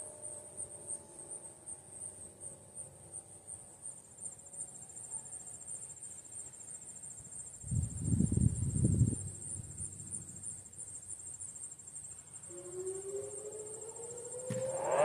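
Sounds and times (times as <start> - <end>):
crickets chirping: 0.0 - 15.0
faint descending tone: 12.5 - 15.0.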